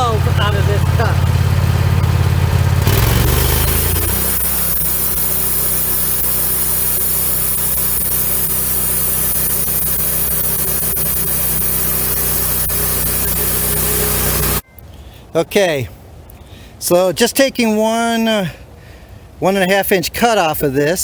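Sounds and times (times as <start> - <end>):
bandsaw mill engine under load: 0.0 - 14.6
band blade cutting wood: 2.8 - 14.6.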